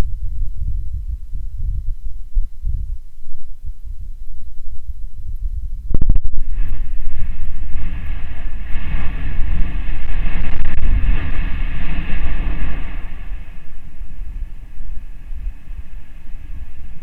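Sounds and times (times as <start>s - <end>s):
volcano rumbling: 0.0s - 17.0s
volcano blast: 5.9s - 17.0s.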